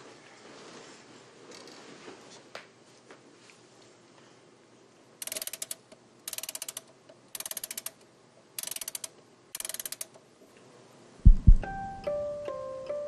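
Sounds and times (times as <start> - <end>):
wind-up key ratchet clicks: 5.2 - 8.0, 8.6 - 10.2.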